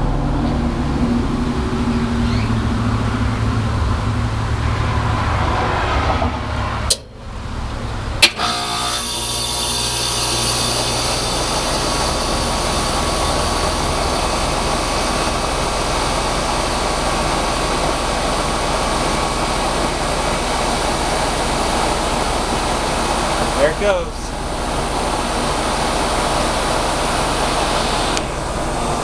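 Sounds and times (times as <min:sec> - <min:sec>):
heat pump running with low hum: 0:00.0 - 0:05.4, 0:06.4 - 0:29.0.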